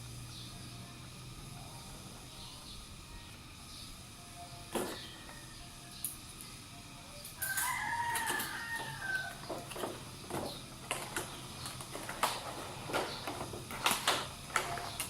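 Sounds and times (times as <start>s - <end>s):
rooster crowing: 7.4s - 9.6s.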